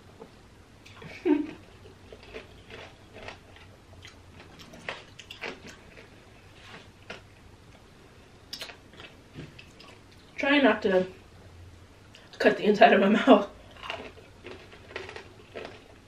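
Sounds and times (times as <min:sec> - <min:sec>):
chewing crunchy sugar shell: 0:01.4 - 0:07.3, 0:13.6 - 0:16.0.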